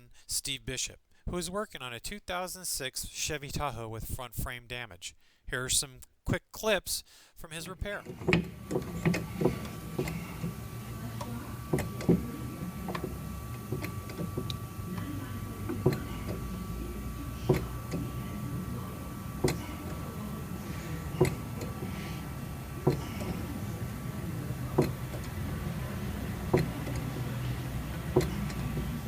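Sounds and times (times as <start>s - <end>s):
steady low hum: 7.4s - 29.0s.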